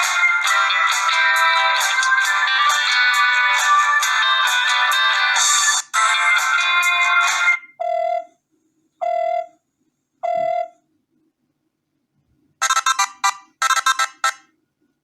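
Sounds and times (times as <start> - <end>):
phone ringtone melody: 0.0 - 8.3, 12.6 - 14.4.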